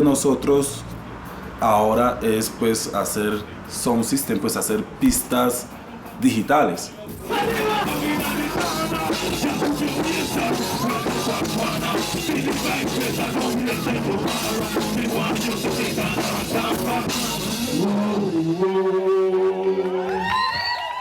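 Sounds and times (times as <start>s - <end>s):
drum kit beating: 7.0s - 18.6s
loud rock music: 7.0s - 20.0s
person singing: 7.2s - 20.4s.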